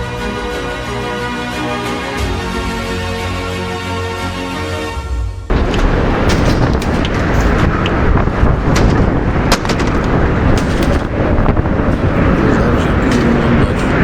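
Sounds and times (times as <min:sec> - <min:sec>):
sharp clicks and knocks: 0:05.5 - 0:11.6
wind buffeting microphone: 0:05.5 - 0:14.0.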